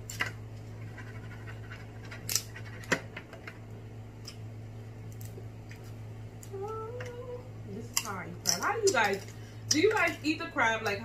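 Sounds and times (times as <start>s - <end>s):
clicks and scratches: 0.0s - 4.4s
low hum: 0.0s - 11.0s
crab shells cracking: 1.9s - 3.5s, 4.2s - 6.5s.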